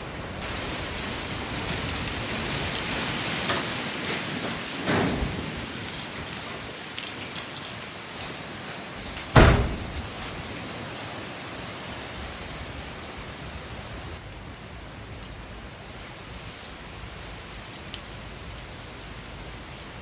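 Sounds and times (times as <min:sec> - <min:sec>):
heavy rain and wind: 0:00.0 - 0:20.0
loud thump: 0:09.0 - 0:10.4.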